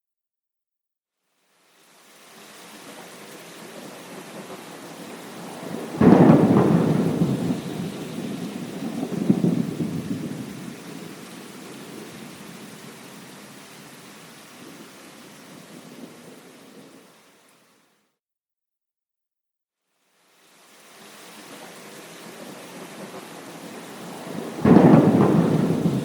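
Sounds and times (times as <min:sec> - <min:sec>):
steady rain: 0:01.2 - 0:18.1, 0:19.9 - 0:26.0
thunderclap and rumble: 0:05.2 - 0:12.8, 0:22.8 - 0:26.0.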